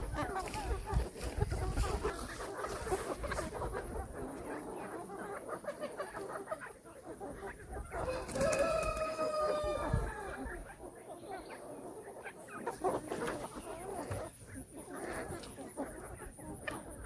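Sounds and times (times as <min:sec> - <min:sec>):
chickens clucking: 0:00.0 - 0:17.0
rooster crowing: 0:08.0 - 0:10.4.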